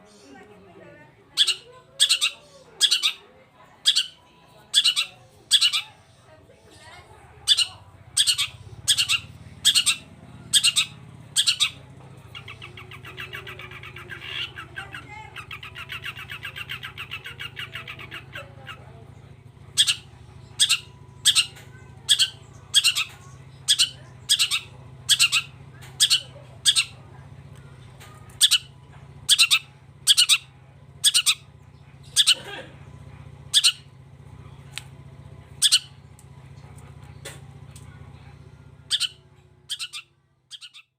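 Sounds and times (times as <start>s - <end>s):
steady low hum: 0.0s - 40.9s
shrike giving harsh rasping calls: 1.4s - 6.2s, 7.4s - 18.9s, 19.7s - 27.0s, 28.4s - 34.0s, 35.6s - 36.0s, 38.9s - 40.9s.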